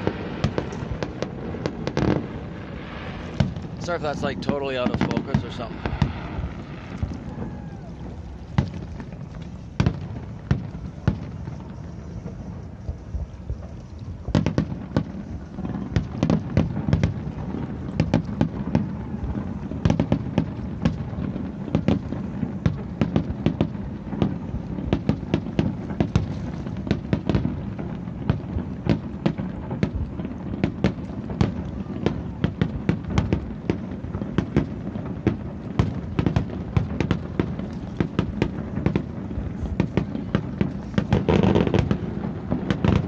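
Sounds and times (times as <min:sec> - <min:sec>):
steady low rumble: 0:00.0 - 0:18.2
fireworks bangs and cracks: 0:00.0 - 0:43.0.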